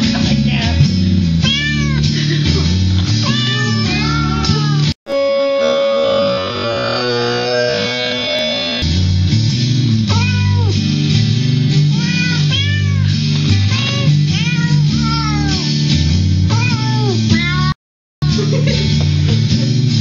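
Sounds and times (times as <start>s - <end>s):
guitar-backed music: 0.0s - 6.7s, 7.8s - 20.0s
cat meows: 1.4s - 2.1s, 3.2s - 4.9s, 10.1s - 10.8s, 11.9s - 15.7s, 16.5s - 17.8s.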